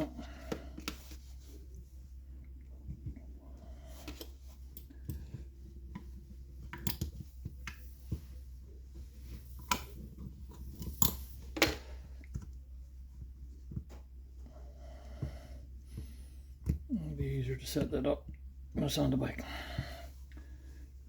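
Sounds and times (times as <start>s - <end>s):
steady low hum: 0.0s - 21.0s
tools clicking and knocking: 4.0s - 8.3s, 9.6s - 12.5s.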